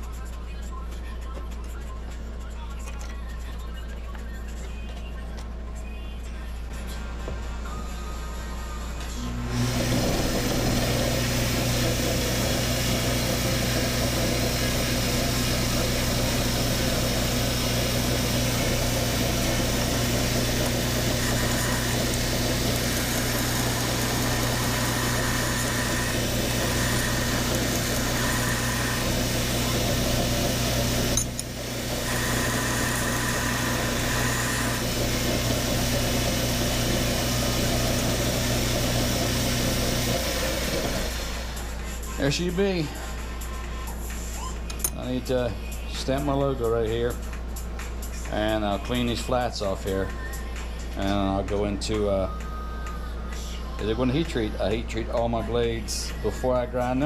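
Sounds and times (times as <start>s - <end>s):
belt grinder grinding steel: 9.2s - 41.8s.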